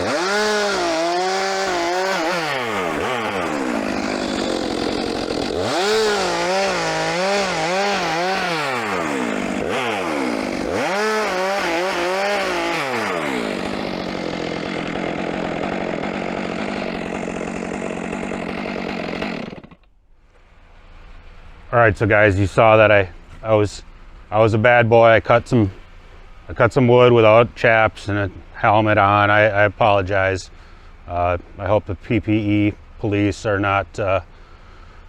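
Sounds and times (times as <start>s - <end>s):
chainsaw cutting wood: 0.0s - 20.0s.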